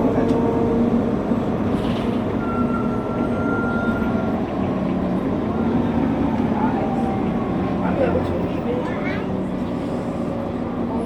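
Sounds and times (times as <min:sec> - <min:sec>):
bus engine and road rumble: 0:00.0 - 0:11.0.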